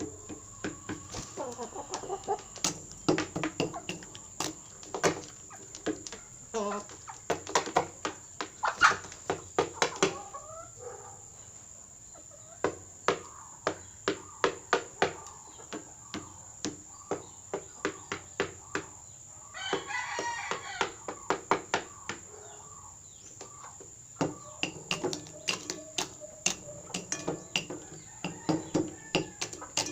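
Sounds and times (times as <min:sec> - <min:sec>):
rooster clucking: 0:00.0 - 0:02.8
beak tapping on food: 0:01.9 - 0:06.3, 0:24.2 - 0:29.9
rooster crowing: 0:19.5 - 0:21.0, 0:27.7 - 0:29.9.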